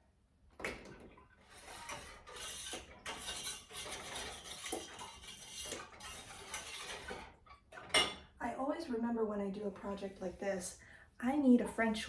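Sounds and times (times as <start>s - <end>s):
whisk scraping and clinking: 1.5s - 8.2s.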